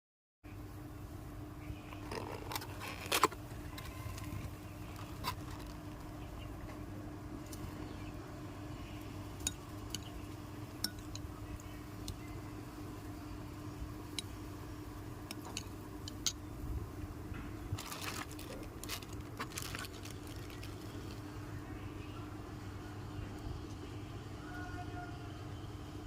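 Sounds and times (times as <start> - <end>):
steady low hum: 0.5 - 26.0.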